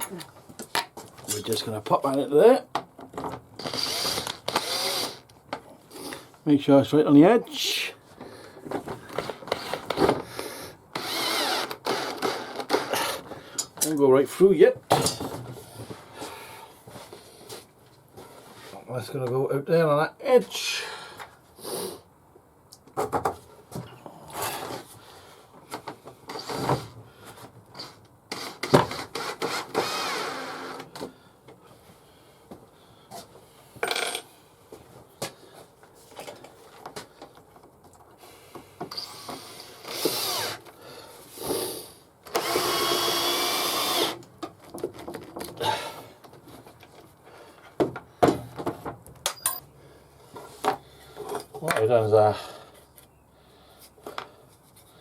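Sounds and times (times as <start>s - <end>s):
knocks and clicks of wood and tools: 0.0s - 2.0s, 2.7s - 4.7s, 22.8s - 24.0s, 25.6s - 29.9s, 44.2s - 45.6s, 46.2s - 49.6s
power drill driving screw into wood: 3.6s - 5.3s, 9.5s - 10.3s, 10.9s - 13.3s, 26.3s - 26.8s, 27.8s - 31.0s, 38.9s - 40.6s, 42.3s - 44.3s.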